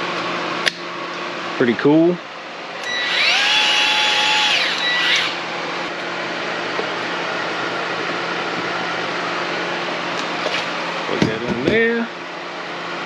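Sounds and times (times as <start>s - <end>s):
fan-like background hum: 0.0s - 13.0s
grease gun motor whining: 2.8s - 5.4s.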